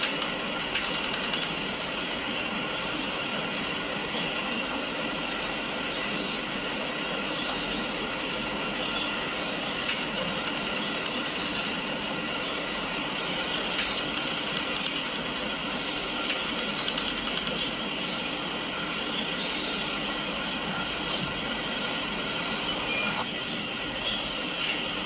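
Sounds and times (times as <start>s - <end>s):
laser welder rapid ticks: 0.0s - 1.6s, 9.8s - 11.9s, 13.7s - 15.5s, 16.3s - 17.6s
machine running noise: 0.0s - 25.0s.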